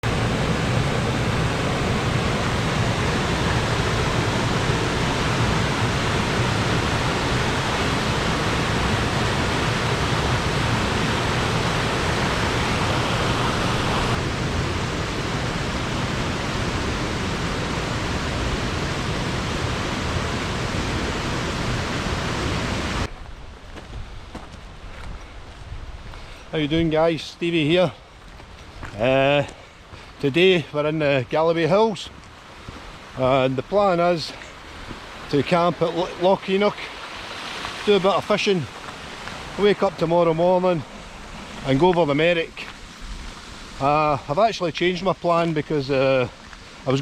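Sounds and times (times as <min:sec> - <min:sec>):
loud rushing noise: 0:00.0 - 0:23.1.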